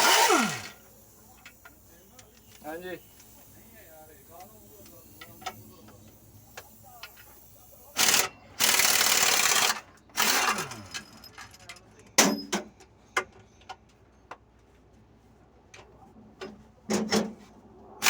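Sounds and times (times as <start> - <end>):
power tool running: 0.0 - 0.9, 8.0 - 11.0
light clinks of tools: 0.8 - 8.4, 9.9 - 14.4.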